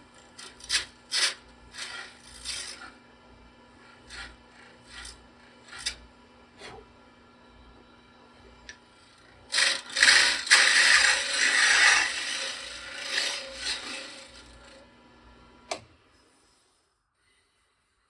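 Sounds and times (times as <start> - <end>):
cutter scraping wood: 0.0 - 3.0, 3.8 - 6.0, 9.1 - 14.8
lathe humming: 0.0 - 15.8
switch click: 15.7 - 15.9.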